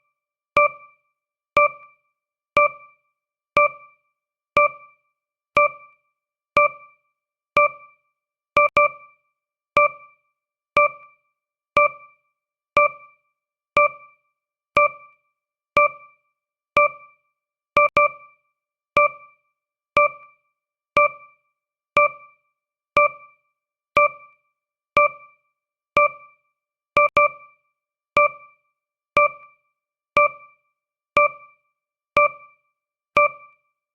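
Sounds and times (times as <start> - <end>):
electronic timer chime ticks: 0.6 - 0.9, 1.6 - 1.9, 2.6 - 2.9, 3.6 - 3.9, 4.6 - 4.9, 5.6 - 5.9, 6.6 - 6.9, 7.6 - 7.9, 8.6 - 9.0, 9.8 - 10.1, 10.8 - 11.1, 11.8 - 12.1, 12.8 - 13.1, 13.8 - 14.1, 14.8 - 15.1, 15.8 - 16.1, 16.8 - 17.1, 17.8 - 18.2, 19.0 - 19.3, 20.0 - 20.3, 21.0 - 21.3, 22.0 - 22.3, 23.0 - 23.3, 24.0 - 24.3, 25.0 - 25.2, 26.0 - 26.2, 27.0 - 27.4, 28.2 - 28.5, 29.2 - 29.5, 30.2 - 30.5, 31.2 - 31.5, 32.2 - 32.5, 33.2 - 33.6.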